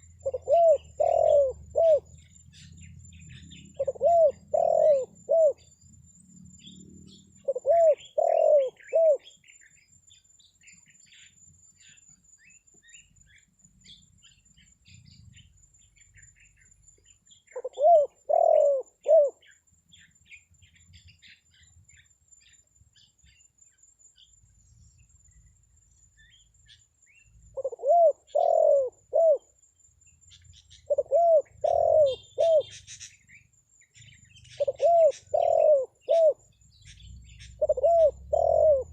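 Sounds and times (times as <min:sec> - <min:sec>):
dove cooing: 0:00.0 - 0:05.7, 0:06.6 - 0:09.5, 0:17.5 - 0:19.6, 0:27.5 - 0:29.6, 0:30.7 - 0:33.4, 0:34.0 - 0:38.9
small birds chirping: 0:00.0 - 0:38.9.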